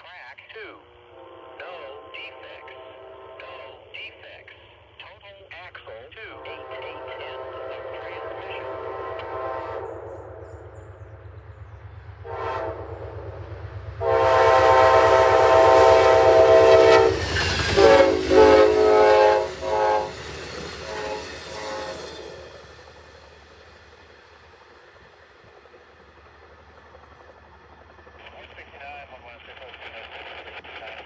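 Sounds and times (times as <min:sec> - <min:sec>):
low train rumble: 0:00.1 - 0:31.0
locomotive air horn blasts: 0:01.1 - 0:03.4, 0:06.3 - 0:10.7, 0:12.2 - 0:13.1, 0:14.0 - 0:22.6.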